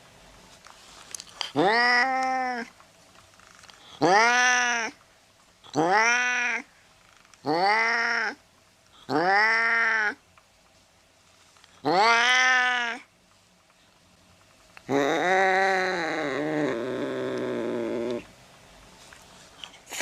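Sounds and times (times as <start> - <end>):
cat meowing: 1.6 - 2.7, 4.0 - 5.0, 5.7 - 6.7, 7.4 - 8.4, 9.1 - 10.2, 11.9 - 13.1.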